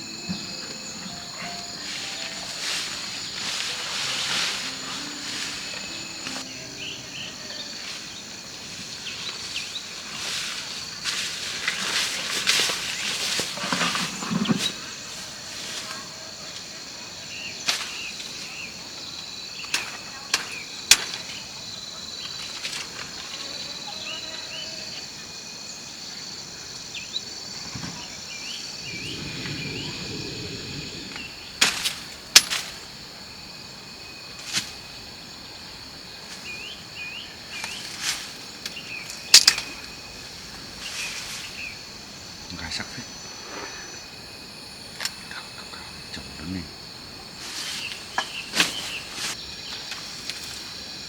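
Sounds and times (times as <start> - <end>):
insects buzzing: 0.0 - 51.0
birds chirping: 28.2 - 31.6.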